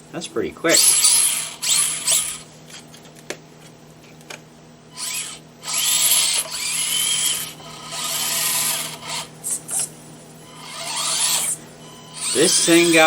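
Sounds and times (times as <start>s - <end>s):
electric motor whining: 0.7s - 2.9s, 4.9s - 13.0s.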